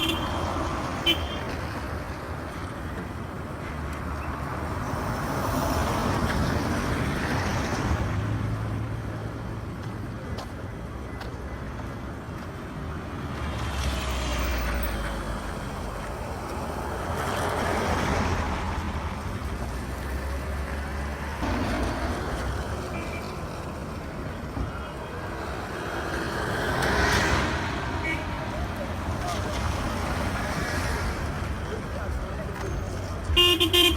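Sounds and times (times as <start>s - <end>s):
vehicles passing: 0.0s - 33.9s.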